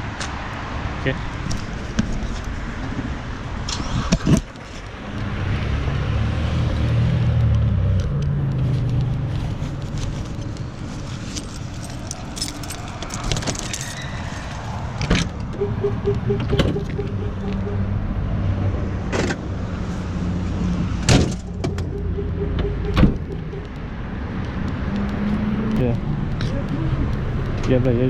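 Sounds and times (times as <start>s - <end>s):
car engine and road noise: 0.0s - 28.0s
sharp clicks and rattles: 8.9s - 15.5s.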